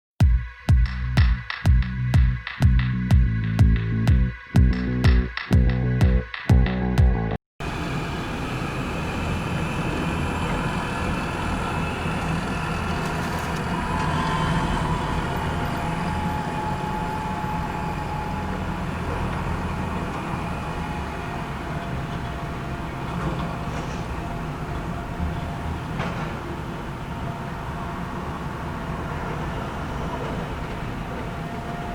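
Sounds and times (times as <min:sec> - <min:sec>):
excavator diesel engine running: 0:07.6 - 0:31.9
hydraulic whine: 0:07.6 - 0:31.9.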